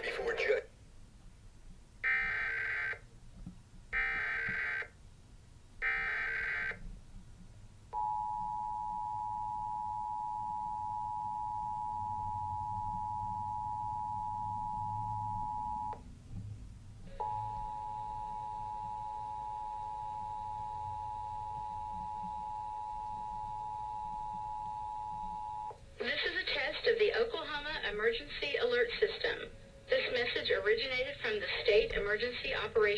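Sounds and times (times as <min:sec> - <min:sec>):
two-tone attention signal: 0:08.0 - 0:16.0.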